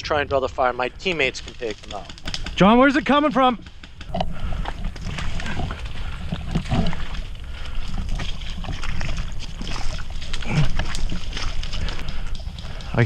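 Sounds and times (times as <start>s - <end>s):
brush and gear rustling: 0.8s - 3.2s, 3.9s - 13.0s
footsteps squelching through water: 4.4s - 13.0s.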